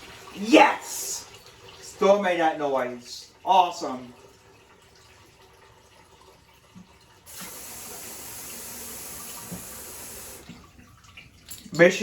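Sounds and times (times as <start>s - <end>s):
water running from a tap: 0.0s - 12.0s.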